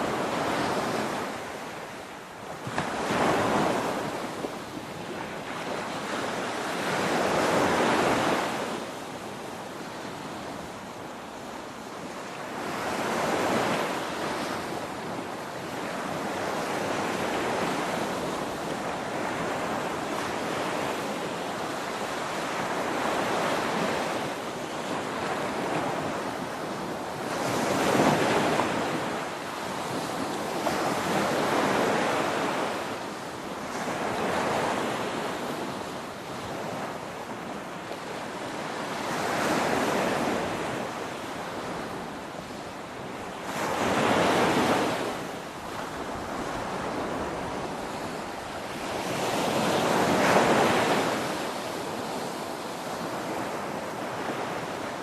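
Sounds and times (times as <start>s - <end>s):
ocean surf breaking on shore: 11.6s - 55.0s.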